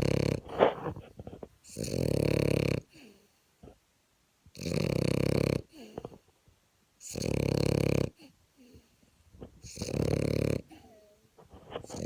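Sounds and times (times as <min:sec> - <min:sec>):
dog snoring: 0:00.0 - 0:00.9, 0:01.7 - 0:02.9, 0:04.5 - 0:06.1, 0:07.0 - 0:08.2, 0:09.6 - 0:11.0, 0:11.7 - 0:12.0.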